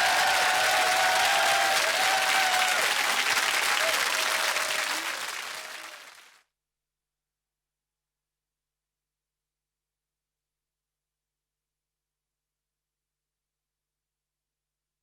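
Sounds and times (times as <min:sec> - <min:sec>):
audience applauding: 0:00.0 - 0:06.4.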